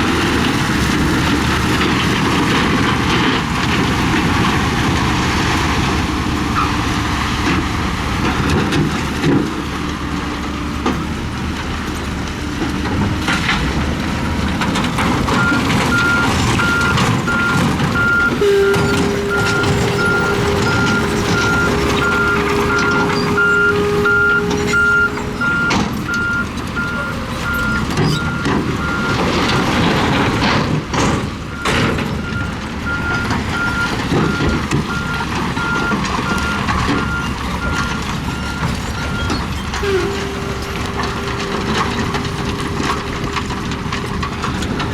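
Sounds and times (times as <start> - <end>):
heavy machinery diesel engine: 0.0 - 44.9
reversing alarm beeping: 15.3 - 29.6.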